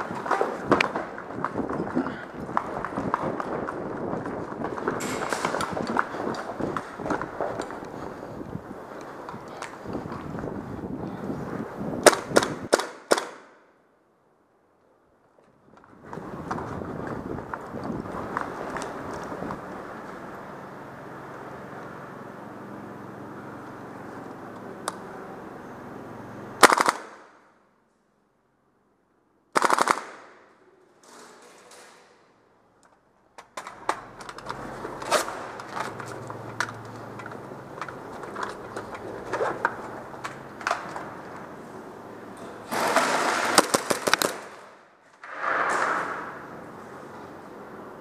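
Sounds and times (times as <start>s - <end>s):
airsoft rifle shots: 12.0s - 13.7s, 26.6s - 27.4s, 29.5s - 30.6s, 42.7s - 46.5s.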